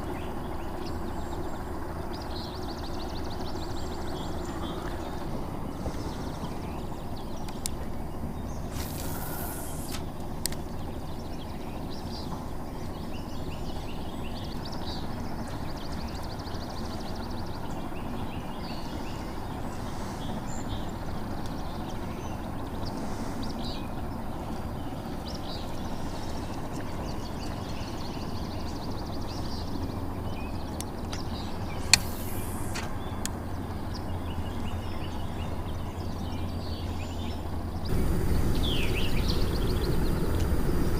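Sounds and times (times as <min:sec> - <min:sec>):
birds chirping: 0:00.0 - 0:40.9
low outdoor noise: 0:00.0 - 0:40.9
brief swishes: 0:08.7 - 0:10.0
sharp click: 0:08.7 - 0:10.6, 0:30.8 - 0:33.4.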